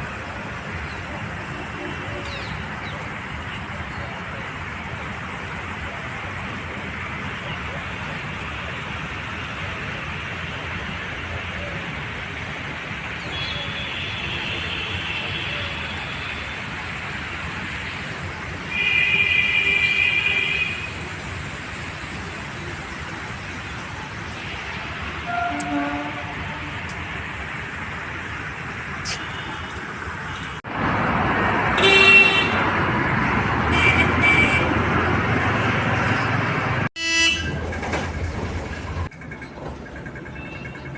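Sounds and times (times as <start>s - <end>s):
road traffic: 0.0s - 40.9s
rumble of passing vehicles: 0.0s - 40.9s
vehicle horn blast: 25.2s - 26.8s, 37.0s - 37.5s.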